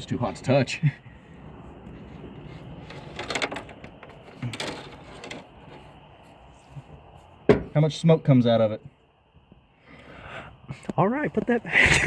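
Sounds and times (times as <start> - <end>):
car engine idling with knocking: 7.5 - 7.8.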